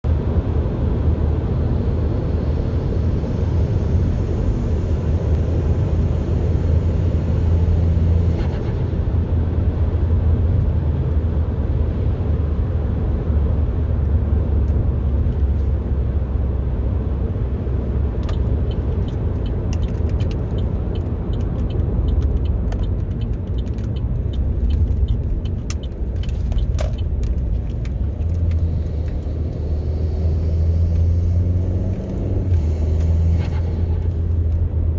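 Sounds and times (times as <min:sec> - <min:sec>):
car engine droning: 0:00.1 - 0:34.9
turbo flutter ticks: 0:18.3 - 0:29.2.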